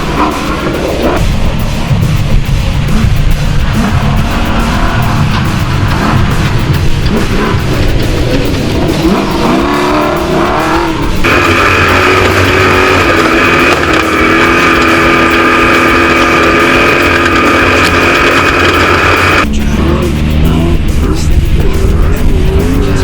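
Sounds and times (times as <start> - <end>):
truck engine revving: 0.0 - 23.0.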